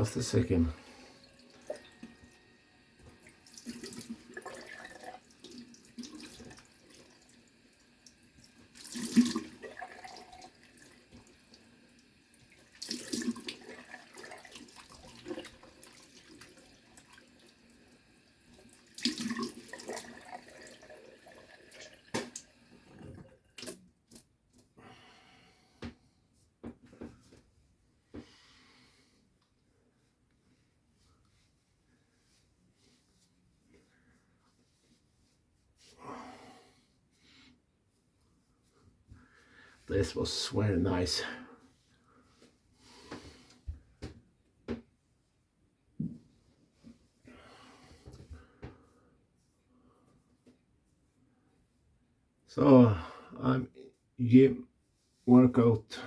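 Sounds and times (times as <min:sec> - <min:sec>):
tap running into sink: 0:22.1 - 0:23.8.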